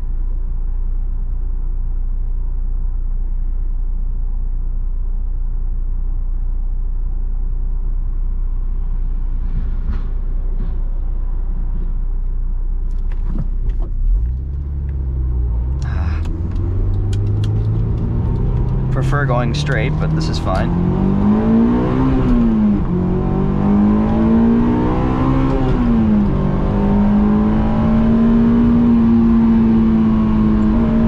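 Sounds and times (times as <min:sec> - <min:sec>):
car engine and road noise inside: 0:00.0 - 0:31.0
clicks: 0:15.8 - 0:18.8.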